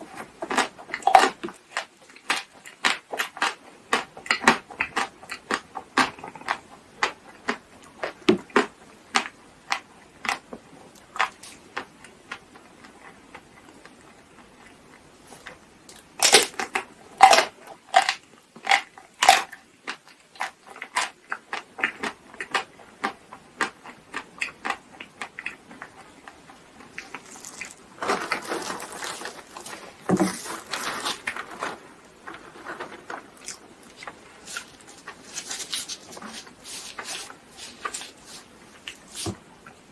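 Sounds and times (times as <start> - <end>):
crunching and chewing: 0.0 - 39.9
rustling: 26.8 - 39.5.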